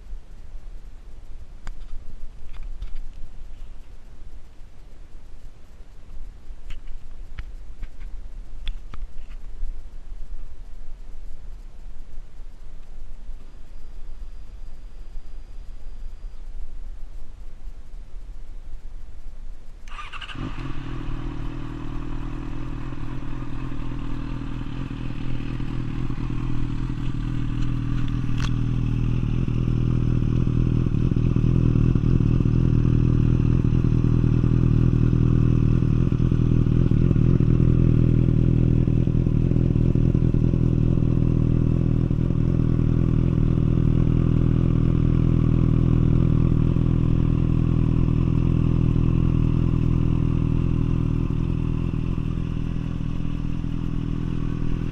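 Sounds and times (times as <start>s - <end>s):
motorcycle engine idling: 19.8s - 54.9s.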